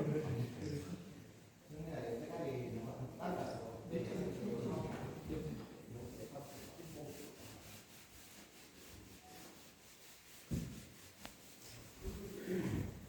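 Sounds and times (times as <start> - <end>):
faint rubbing and handling: 3.4 - 13.0.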